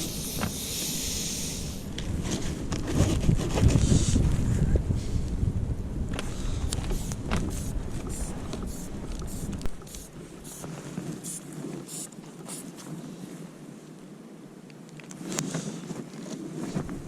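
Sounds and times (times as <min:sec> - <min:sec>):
hissy scrapes: 0:00.0 - 0:04.3, 0:06.2 - 0:13.4
wind buffeting microphone: 0:00.0 - 0:12.0.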